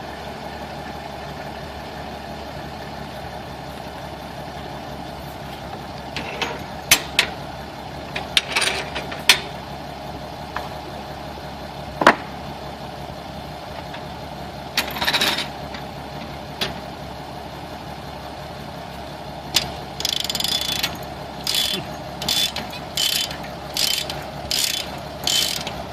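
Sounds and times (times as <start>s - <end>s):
engine running: 0.0s - 25.9s
knocks and clanks: 6.2s - 7.4s, 8.1s - 9.6s, 12.0s - 12.4s
short rattle: 19.5s - 25.9s.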